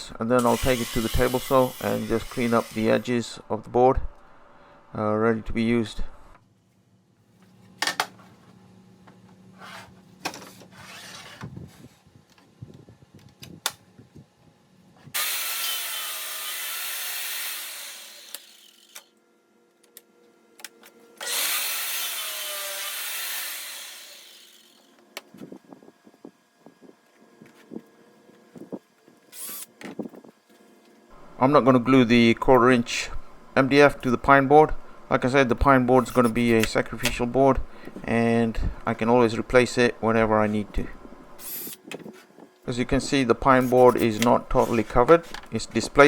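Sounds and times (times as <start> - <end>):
electric saw cutting wood: 0.4 - 3.1, 10.8 - 11.4, 15.1 - 19.1, 21.2 - 24.9.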